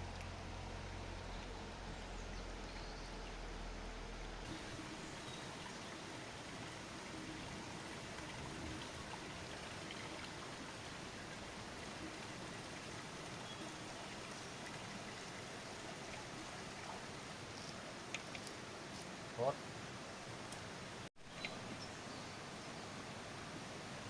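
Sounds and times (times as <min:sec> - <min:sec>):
low hum: 0:00.0 - 0:12.6
rushing water-like noise: 0:00.0 - 0:24.0.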